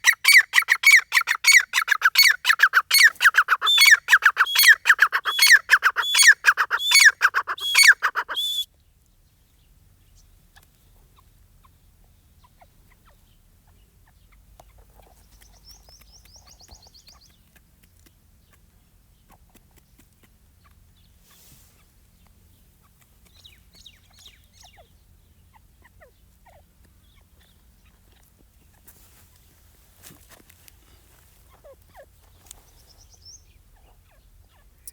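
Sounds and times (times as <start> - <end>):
distant bird chirps: 0.0 - 8.7, 10.1 - 17.5
francolin calling: 0.0 - 8.7.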